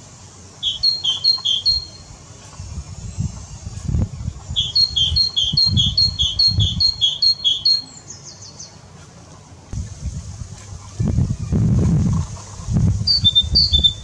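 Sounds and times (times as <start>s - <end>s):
bird singing whistled notes: 0.6s - 2.1s, 4.5s - 8.8s, 13.0s - 14.0s.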